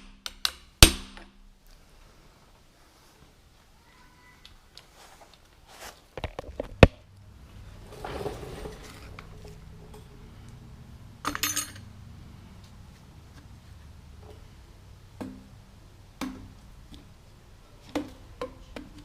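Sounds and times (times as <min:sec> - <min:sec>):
rustle: 0:01.6 - 0:06.8
metal tools clinking on workbench: 0:11.2 - 0:11.9.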